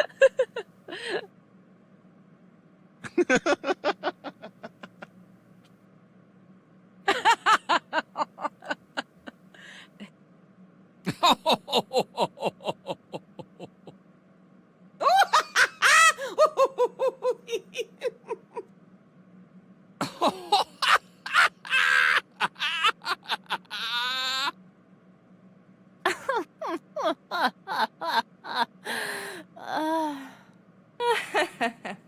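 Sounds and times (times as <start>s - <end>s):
animated character laughing: 0.0s - 1.3s, 3.0s - 5.1s, 7.1s - 9.4s, 11.1s - 14.0s, 15.0s - 18.7s, 20.0s - 24.6s, 26.1s - 28.8s, 31.0s - 32.0s.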